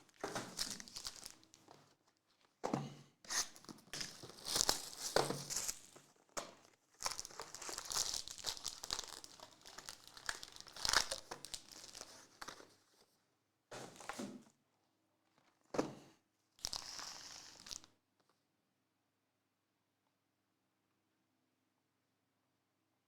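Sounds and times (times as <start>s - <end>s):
plastic wrapping tearing and crinkling: 0.0s - 2.5s, 3.3s - 6.1s, 6.9s - 12.7s, 16.6s - 17.9s.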